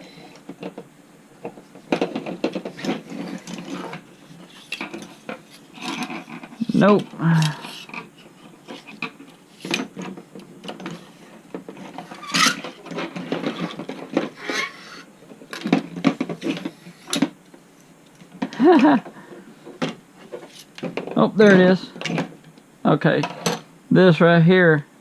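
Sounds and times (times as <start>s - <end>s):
small parts clicking and scraping: 1.4s - 23.6s.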